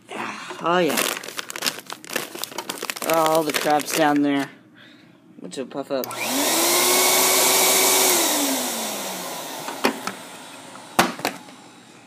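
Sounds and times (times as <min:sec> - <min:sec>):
vacuum cleaner motor whining: 0:06.0 - 0:12.0.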